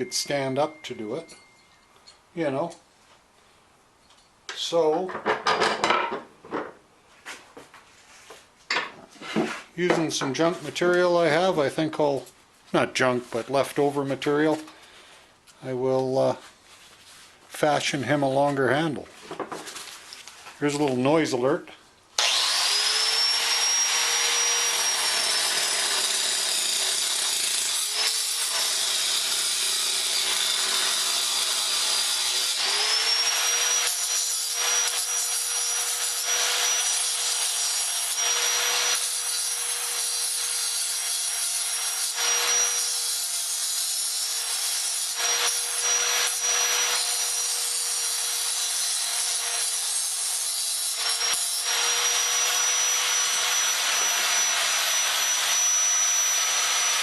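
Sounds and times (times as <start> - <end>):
power tool motor whine: 22.2 - 36.9, 51.1 - 57.0.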